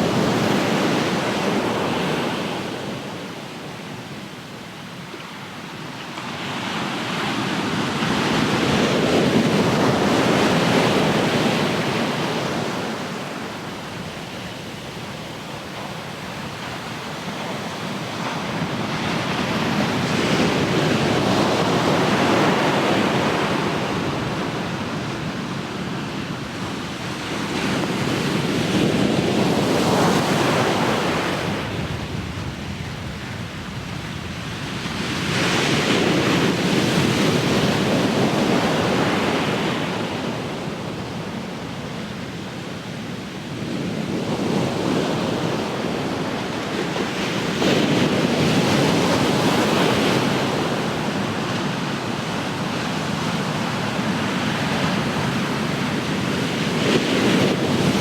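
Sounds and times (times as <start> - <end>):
wind on microphone: 43.5 - 58.0
ocean waves breaking: 44.7 - 58.0.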